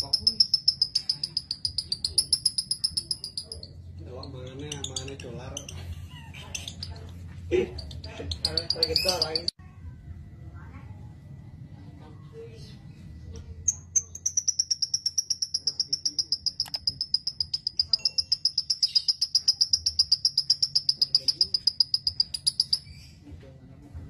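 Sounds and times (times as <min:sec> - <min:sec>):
bird high-pitched trill: 0:00.0 - 0:05.8, 0:07.8 - 0:09.5, 0:13.6 - 0:23.2
faint bird chirps: 0:00.0 - 0:07.1, 0:12.4 - 0:23.3.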